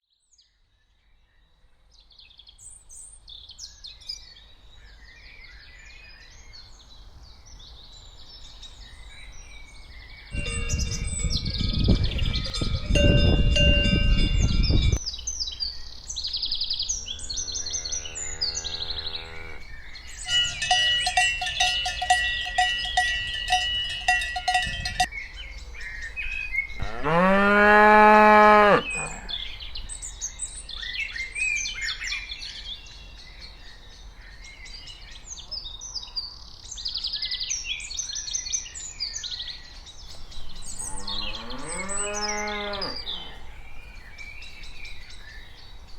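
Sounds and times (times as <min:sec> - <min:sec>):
birds chirping: 0:10.0 - 0:30.1, 0:40.1 - 0:45.9
cowbells ringing: 0:10.4 - 0:15.0, 0:20.2 - 0:25.1
cattle mooing: 0:17.1 - 0:19.6, 0:26.8 - 0:29.4, 0:40.8 - 0:43.4.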